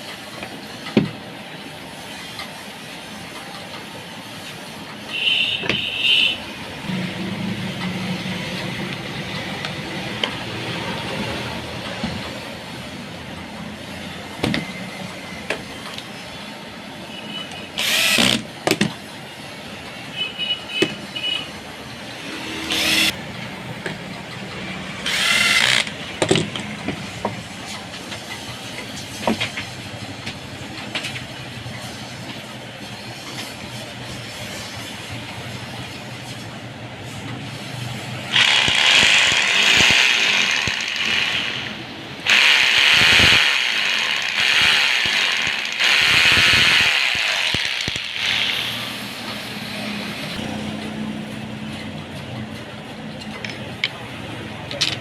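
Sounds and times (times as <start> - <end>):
steady background noise: 0.0 - 55.0
electric hammer drill: 17.8 - 18.4, 22.5 - 23.2, 25.0 - 26.0, 38.3 - 49.0.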